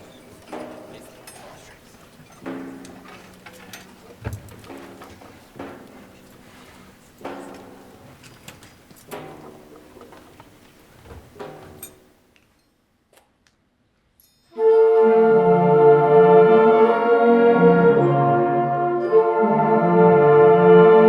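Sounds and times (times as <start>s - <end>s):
school band playing: 2.4s - 8.2s, 14.5s - 21.0s
brass holding a chord: 14.6s - 21.0s.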